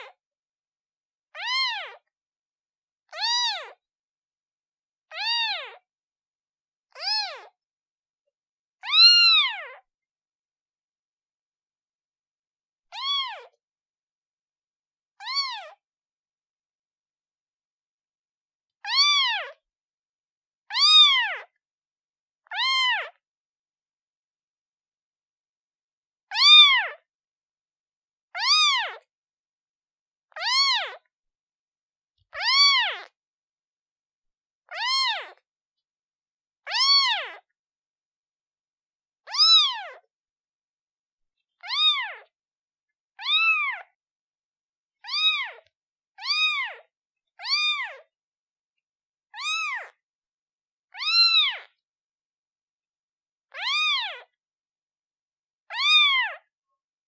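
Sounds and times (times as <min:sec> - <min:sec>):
kitten meowing: 0:01.4 - 0:02.0, 0:03.2 - 0:03.8, 0:05.1 - 0:05.8, 0:07.0 - 0:07.5, 0:08.8 - 0:09.8, 0:12.9 - 0:13.6, 0:15.2 - 0:15.8, 0:18.8 - 0:19.6, 0:20.7 - 0:21.5, 0:22.5 - 0:23.2, 0:26.3 - 0:27.0, 0:28.4 - 0:29.0, 0:30.3 - 0:31.0, 0:32.4 - 0:33.1, 0:34.7 - 0:35.4, 0:36.7 - 0:37.4, 0:39.3 - 0:40.0, 0:41.6 - 0:42.3, 0:43.2 - 0:43.9, 0:45.0 - 0:46.8, 0:47.4 - 0:48.1, 0:49.4 - 0:50.0, 0:51.0 - 0:51.7, 0:53.5 - 0:54.4, 0:55.7 - 0:56.4.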